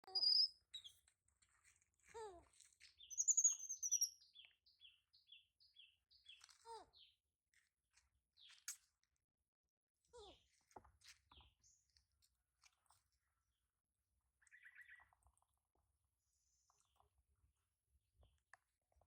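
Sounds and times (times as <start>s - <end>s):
animal chirping: 0.0s - 1.0s, 3.1s - 4.2s.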